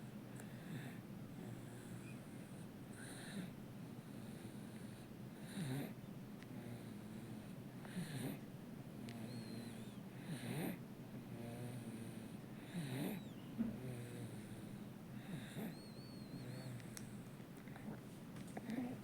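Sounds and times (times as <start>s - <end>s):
baby snoring: 9.2s - 16.9s.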